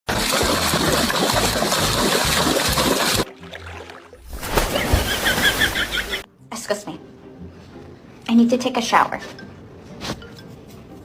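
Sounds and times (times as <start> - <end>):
running water rushing: 0.1 - 6.2.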